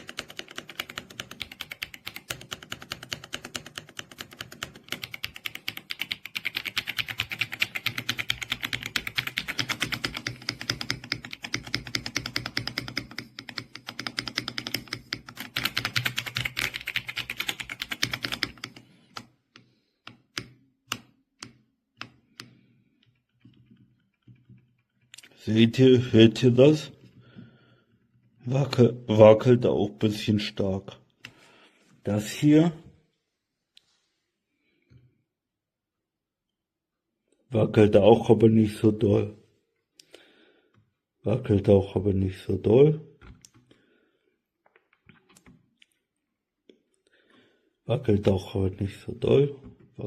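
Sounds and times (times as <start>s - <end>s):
typing on mechanical keyboard: 0.0s - 19.3s.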